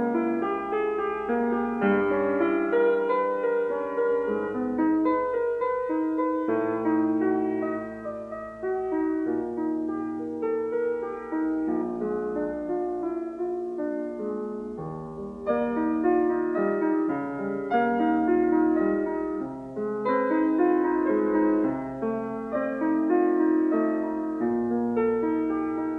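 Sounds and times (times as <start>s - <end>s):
gentle piano music: 0.0s - 25.9s.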